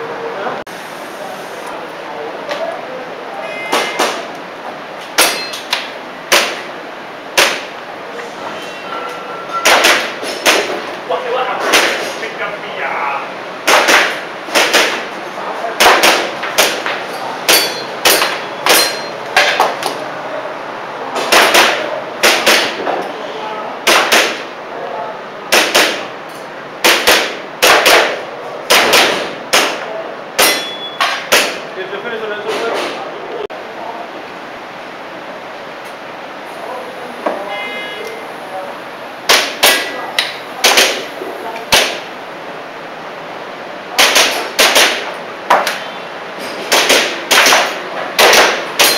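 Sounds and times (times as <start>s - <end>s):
airsoft pistol shots: 6.3s - 6.7s, 9.7s - 10.8s, 13.6s - 15.1s, 15.8s - 16.8s, 21.3s - 22.8s, 23.8s - 24.5s, 25.5s - 26.1s, 26.8s - 29.8s, 30.4s - 31.6s, 40.6s - 41.1s, 44.0s - 45.1s, 46.7s - 48.9s.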